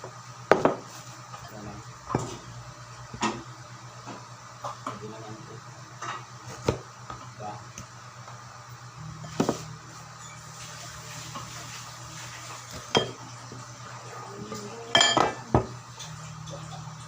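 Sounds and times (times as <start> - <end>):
steady low hum: 0.0 - 17.0
utensils and dishes clattering: 10.3 - 13.2, 14.4 - 17.0.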